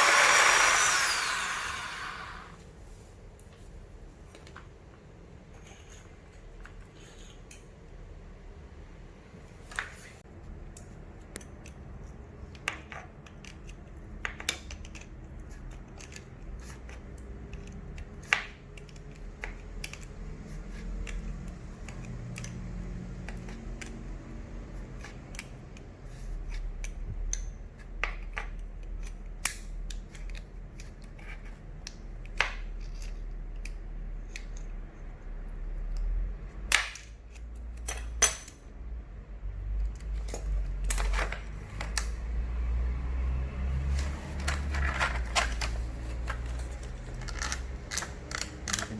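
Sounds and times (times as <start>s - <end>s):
metal hardware clicks and knocks: 36.7s - 38.7s, 47.1s - 48.9s.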